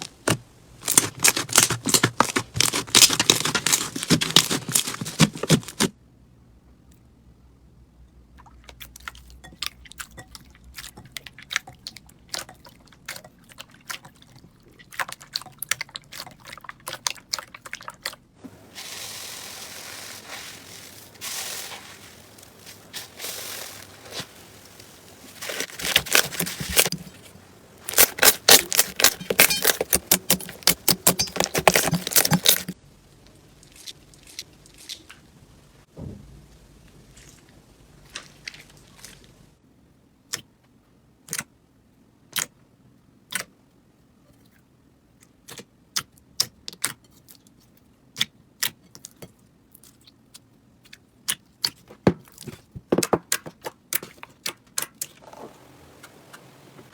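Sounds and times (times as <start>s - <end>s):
slime squelching and popping: 18.8s - 32.8s.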